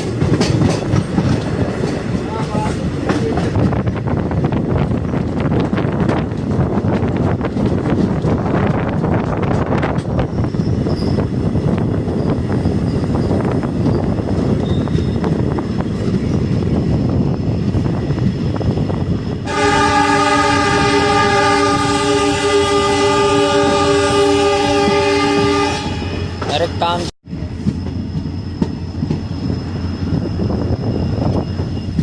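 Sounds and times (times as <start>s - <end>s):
train rumbling on track: 0.0s - 32.0s
train horn blast: 19.4s - 26.6s.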